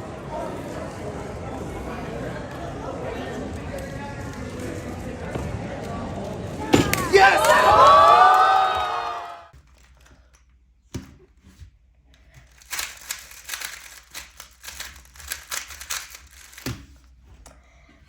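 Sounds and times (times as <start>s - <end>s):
speedcube clicking and rattling: 12.2s - 17.1s.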